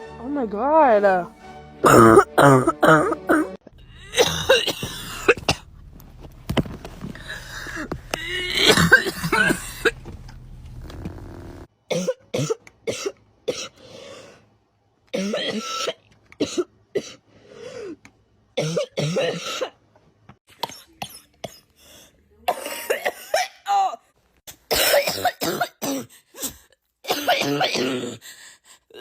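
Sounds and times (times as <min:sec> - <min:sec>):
people coughing: 0:01.8 - 0:05.6, 0:07.2 - 0:10.0, 0:18.6 - 0:19.7, 0:22.5 - 0:23.6, 0:24.7 - 0:26.1, 0:27.1 - 0:28.2
low steady hum: 0:03.7 - 0:11.7.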